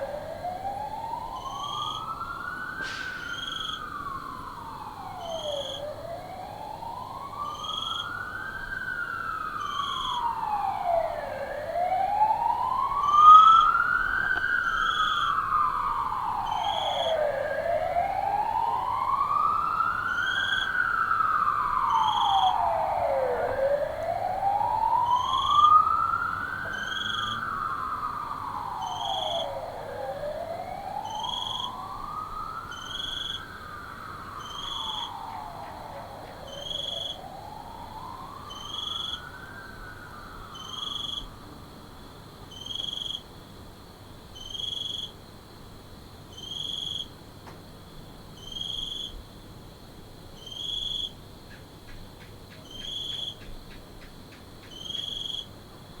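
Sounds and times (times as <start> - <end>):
distant police siren wailing: 0.0 - 42.4
cricket chirping: 0.0 - 56.0.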